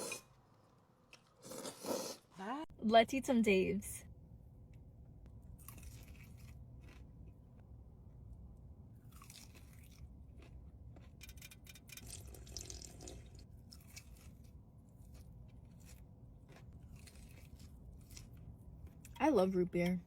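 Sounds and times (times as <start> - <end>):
crunchy chicken being chewed: 5.5 - 7.8, 9.0 - 12.7, 13.4 - 19.2.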